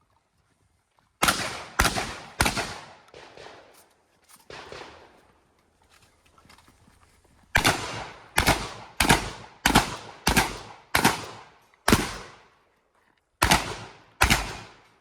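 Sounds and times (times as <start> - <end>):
shotgun shots echoing: 1.2 - 3.8, 4.5 - 5.2, 7.6 - 12.5, 13.4 - 15.0.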